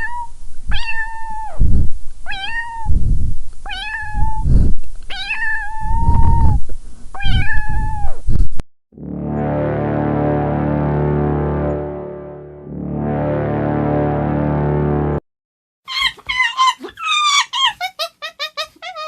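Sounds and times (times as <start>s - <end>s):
cat meowing: 0.0s - 1.6s, 2.3s - 3.0s, 3.6s - 4.4s, 5.1s - 6.6s, 7.2s - 8.2s, 15.9s - 19.0s
low rumble: 9.0s - 15.2s.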